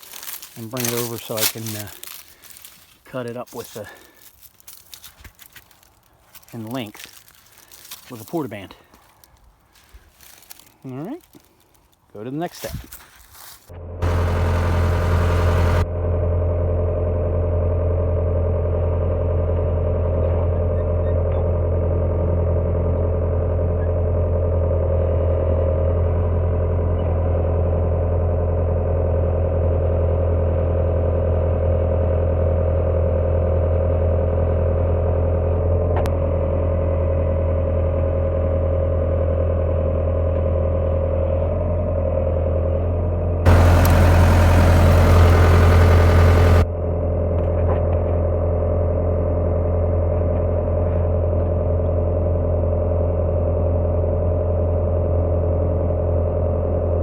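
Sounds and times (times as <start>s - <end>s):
heavy machine engine droning: 13.8s - 21.2s, 43.4s - 47.3s.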